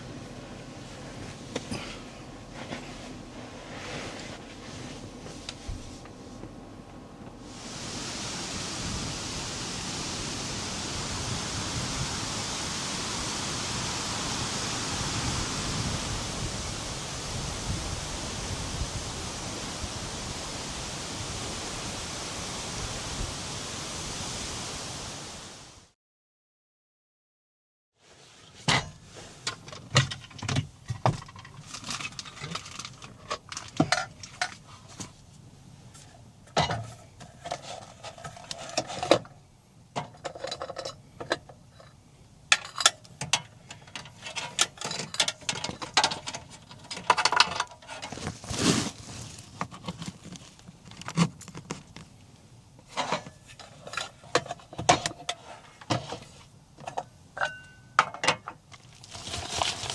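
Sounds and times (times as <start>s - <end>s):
small hard objects clattering: 58.7s - 59.9s.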